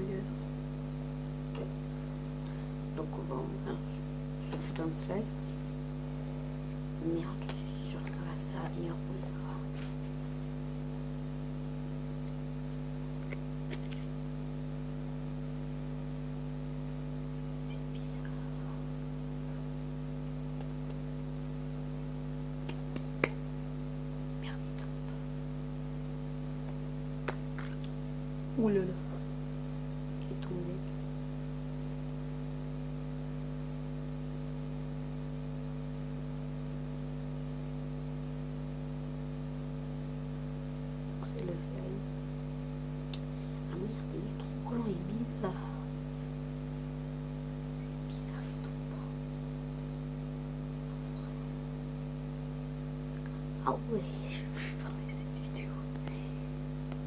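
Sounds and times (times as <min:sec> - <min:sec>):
electrical hum: 0:00.0 - 0:57.0.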